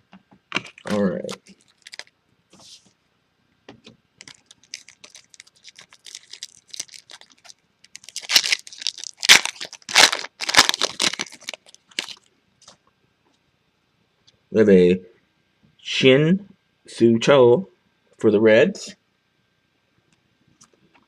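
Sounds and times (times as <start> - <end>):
foil wrapper tearing and crinkling: 0.7 - 2.1, 4.2 - 12.3.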